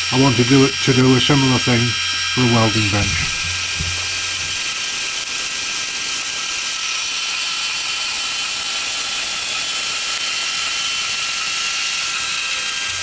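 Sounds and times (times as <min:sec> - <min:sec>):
power tool cutting steel: 0:00.0 - 0:04.6.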